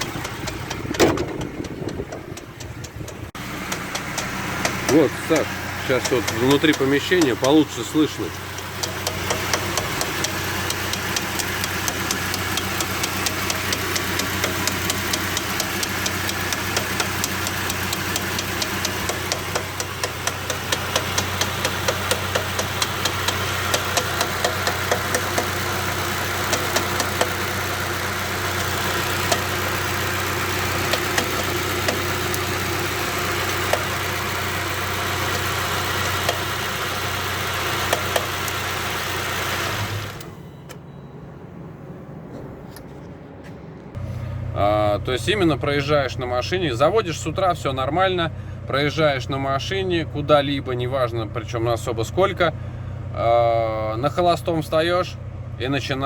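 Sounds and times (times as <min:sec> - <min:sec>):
van engine idling with knock: 0:00.0 - 0:40.2.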